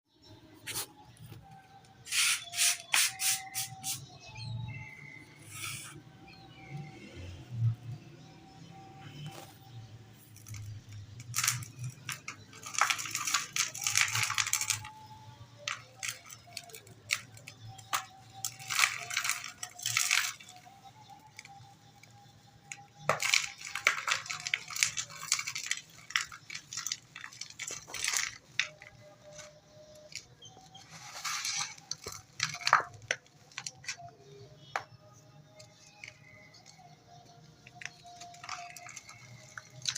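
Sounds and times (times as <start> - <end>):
dirt lumps crunching by hand: 9.2 - 39.9
grains pattering down: 10.4 - 15.0, 23.0 - 34.0, 37.8 - 39.9.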